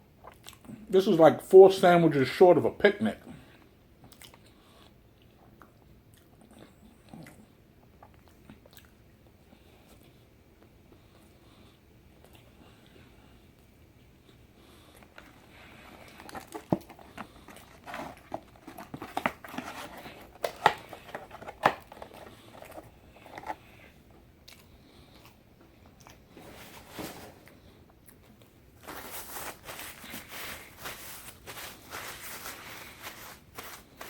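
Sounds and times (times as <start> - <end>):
chewing crackles and clicks: 0.2 - 0.8, 4.0 - 4.6, 5.2 - 9.0, 24.4 - 26.3
paper wrapper crinkling: 15.9 - 23.6, 28.8 - 34.0.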